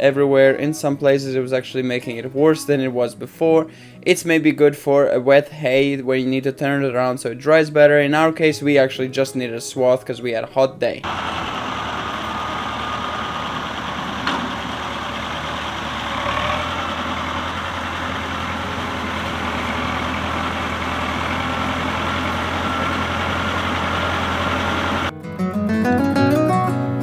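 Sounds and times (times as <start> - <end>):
tractor engine running: 11.0 - 25.1.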